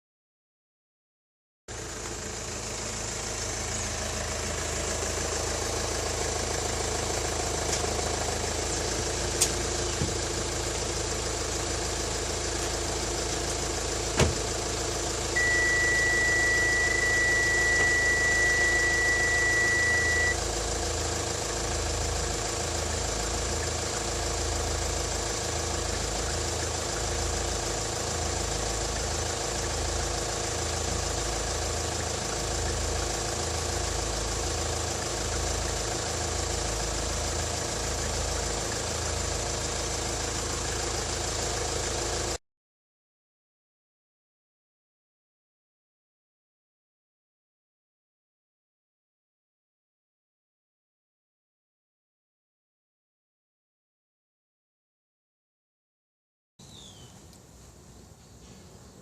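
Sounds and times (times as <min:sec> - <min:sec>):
car engine idling: 0:01.7 - 0:42.4
high-pitched electronic beep: 0:15.4 - 0:20.4.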